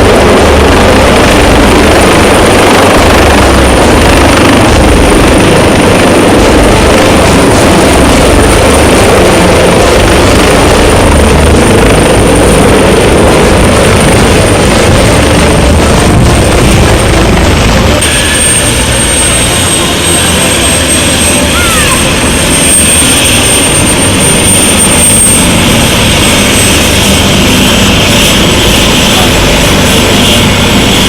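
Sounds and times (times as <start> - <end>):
aircraft engine rumble: 0.0 - 31.0.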